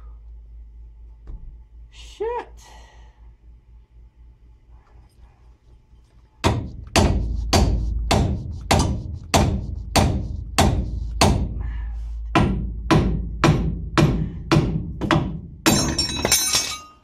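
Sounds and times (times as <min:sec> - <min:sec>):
hammer blows on steel: 0:06.4 - 0:16.0.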